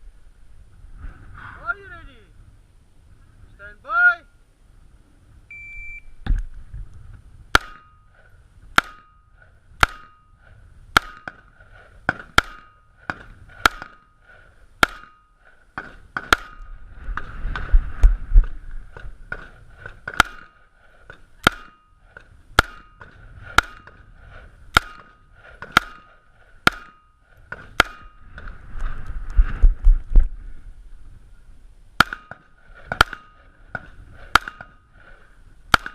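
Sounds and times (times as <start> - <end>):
gunshots: 7.5 - 9.2, 9.8 - 16.7, 19.3 - 20.6, 21.4 - 21.8, 22.5 - 24.0, 24.7 - 28.5, 32.0 - 34.8, 35.7 - 35.9.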